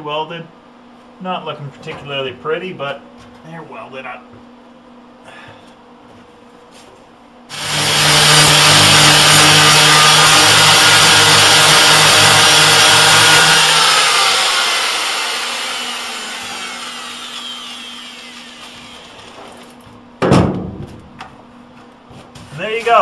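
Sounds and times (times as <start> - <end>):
angle grinder grinding metal: 7.5 - 19.7
grinder spinning down: 7.5 - 19.7.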